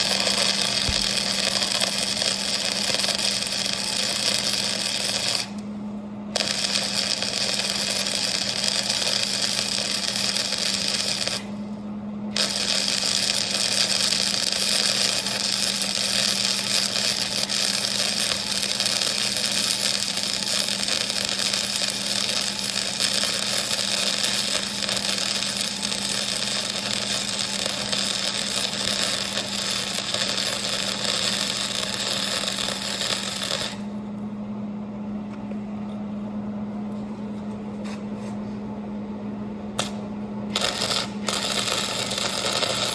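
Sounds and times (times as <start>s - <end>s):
welding arc crackling and hissing: 0.0s - 5.6s, 6.4s - 11.6s, 12.4s - 33.9s, 39.8s - 42.9s
steady hum: 0.0s - 42.9s.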